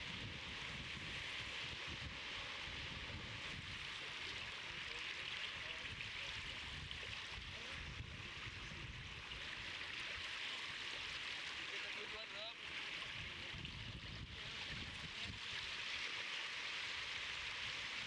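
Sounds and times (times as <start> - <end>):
wind rumbling on microphone: 0.0 - 9.9, 13.0 - 16.0.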